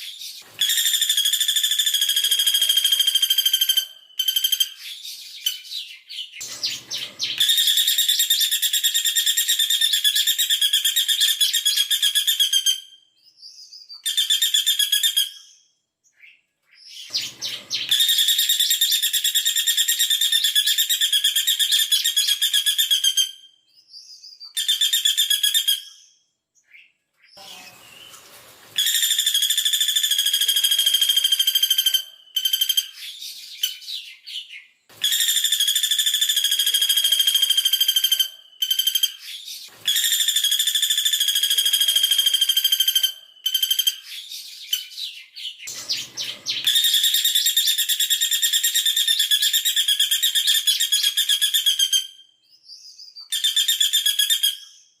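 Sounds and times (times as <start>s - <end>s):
woodpecker rattling trill: 6.5s - 11.1s, 35.1s - 44.0s, 45.7s - 51.3s.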